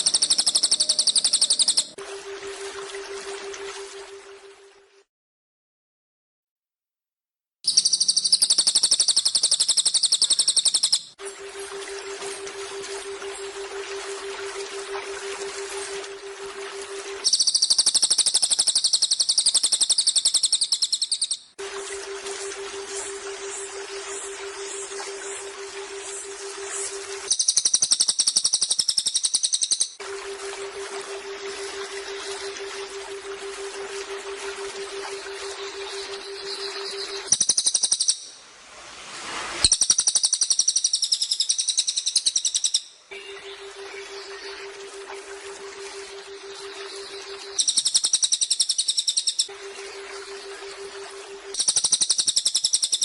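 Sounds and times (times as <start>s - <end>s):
bird trilling: 0.0s - 2.0s, 7.7s - 11.1s, 17.2s - 21.5s, 45.8s - 49.6s
bird fast high trill: 0.0s - 3.6s, 7.7s - 38.3s
rushing water: 0.0s - 5.0s, 7.8s - 53.0s
low steady hum: 11.2s - 17.3s, 21.6s - 27.3s, 30.0s - 37.3s, 43.1s - 47.6s, 49.5s - 51.6s.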